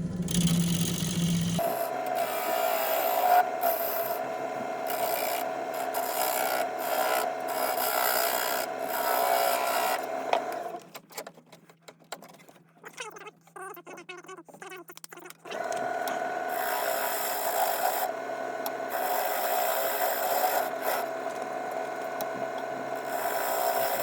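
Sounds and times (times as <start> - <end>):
lathe humming: 0.0 - 10.8, 15.5 - 24.0
tool scraping wood on lathe: 0.3 - 10.8, 15.5 - 24.0.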